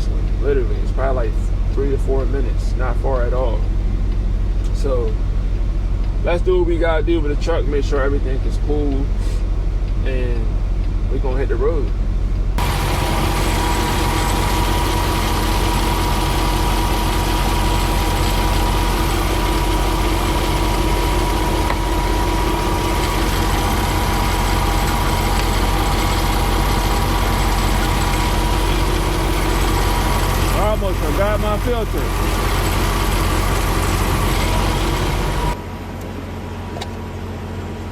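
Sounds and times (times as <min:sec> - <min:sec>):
thin steady whine: 0:00.0 - 0:37.2
diesel engine idling: 0:00.0 - 0:37.9.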